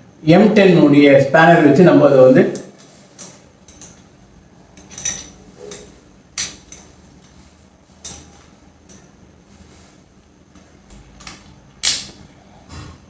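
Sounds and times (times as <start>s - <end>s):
spanner clinking on metal nut: 3.2s - 4.2s, 4.8s - 7.4s, 8.0s - 9.1s.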